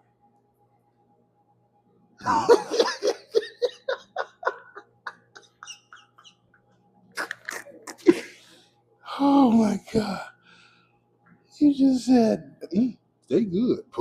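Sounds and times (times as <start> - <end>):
person laughing: 2.2 - 6.4, 7.2 - 8.4.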